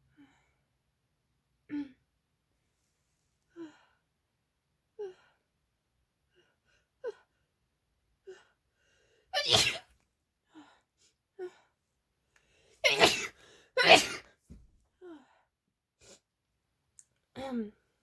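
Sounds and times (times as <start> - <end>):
woman sneezing: 9.4 - 9.8, 12.8 - 14.2.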